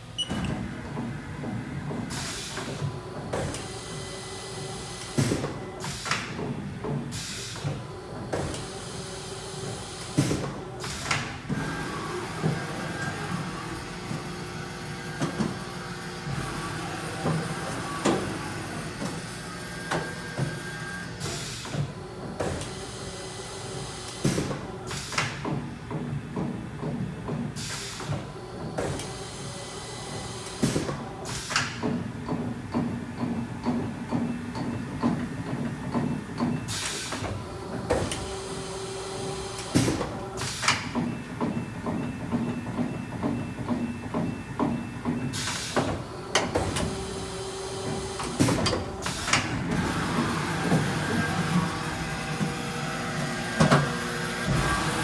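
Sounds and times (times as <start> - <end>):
machine hum with whining tones: 41.0 - 55.0.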